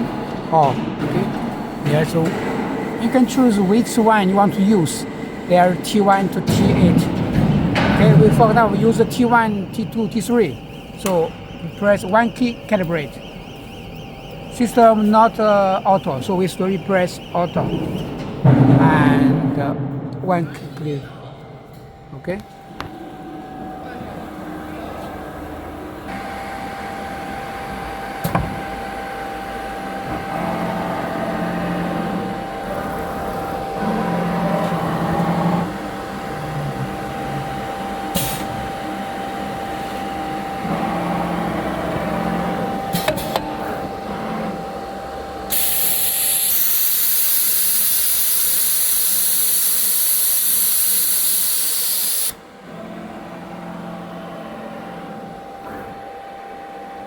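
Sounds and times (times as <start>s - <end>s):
axis motors driving gantry: 22.5s - 56.5s
compressed air hissing: 45.5s - 52.4s.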